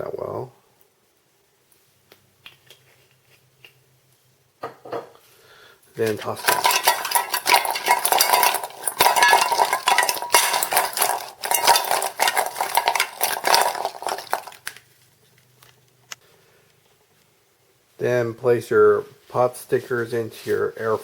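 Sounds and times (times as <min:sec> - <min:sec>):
utensil clinking against bowl: 0:06.0 - 0:14.7.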